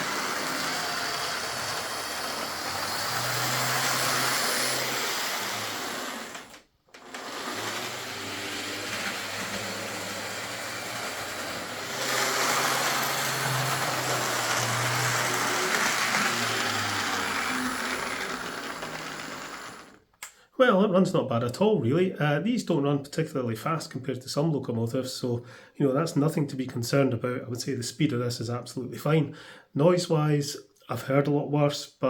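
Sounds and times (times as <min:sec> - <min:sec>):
model locomotive motor whirring: 0:00.0 - 0:20.0.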